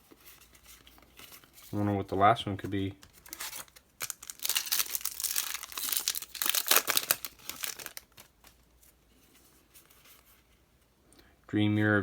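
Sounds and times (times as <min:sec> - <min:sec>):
foil wrapper crinkling and tearing: 0:03.1 - 0:08.6.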